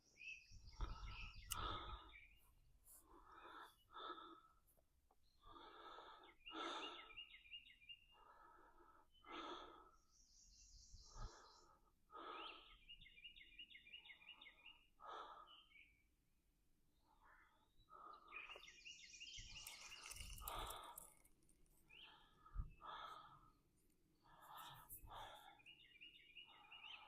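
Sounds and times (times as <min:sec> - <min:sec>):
birds chirping in trills: 0:00.0 - 0:27.0
man breathing heavily: 0:00.8 - 0:07.3, 0:08.0 - 0:10.1, 0:10.9 - 0:12.8, 0:14.4 - 0:15.7, 0:19.5 - 0:21.2, 0:21.9 - 0:25.6.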